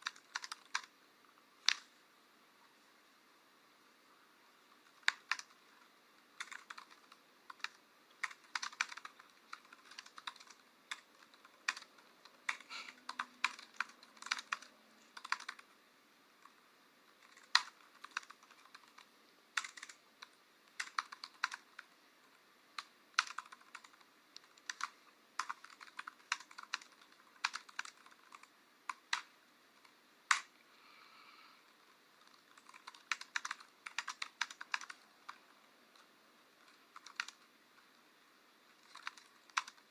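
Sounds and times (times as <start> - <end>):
typing on a keyboard: 0.0 - 0.9, 1.6 - 1.9, 4.8 - 15.7, 17.1 - 21.9, 22.8 - 30.5, 32.2 - 35.4, 36.0 - 37.5, 38.7 - 39.9.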